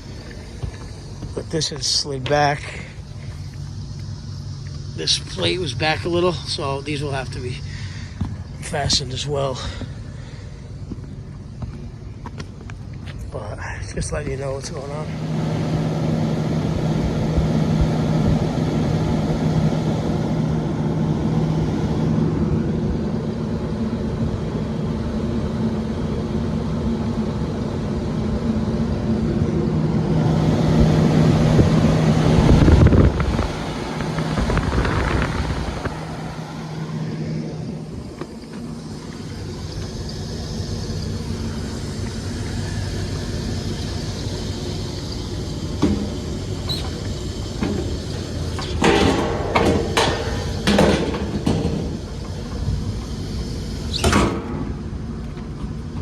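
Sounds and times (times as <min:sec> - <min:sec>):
exhaust fans humming: 0:00.0 - 0:56.0
loud rushing air: 0:29.4 - 0:55.0.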